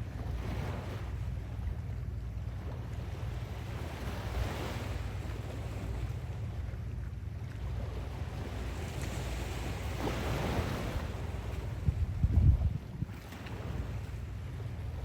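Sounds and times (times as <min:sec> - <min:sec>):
wind buffeting microphone: 0:08.1 - 0:15.0.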